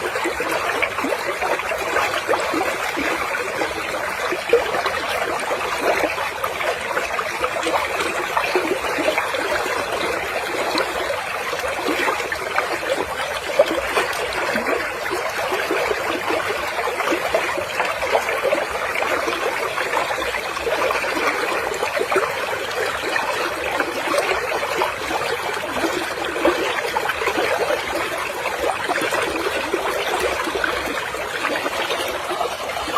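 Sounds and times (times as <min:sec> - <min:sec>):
running water splashing: 0:00.0 - 0:32.9.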